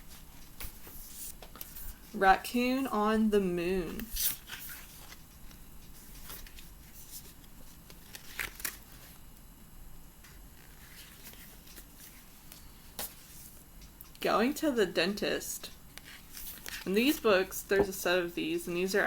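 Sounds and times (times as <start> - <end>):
book pages flipping: 0.1 - 2.0, 4.0 - 9.2, 10.2 - 13.6.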